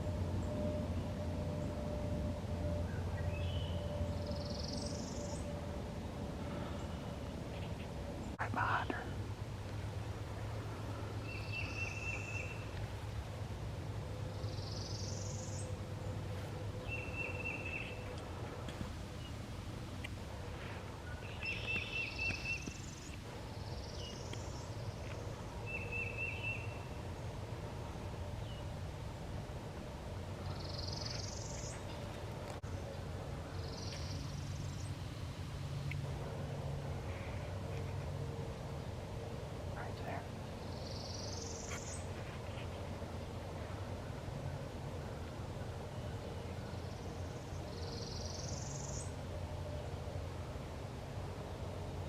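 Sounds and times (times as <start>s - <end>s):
faint low rumble: 0.0s - 52.0s
songbird buzzy song: 0.0s - 52.0s
songbirds singing trilled phrases: 11.2s - 12.8s, 16.8s - 18.3s, 21.1s - 27.0s.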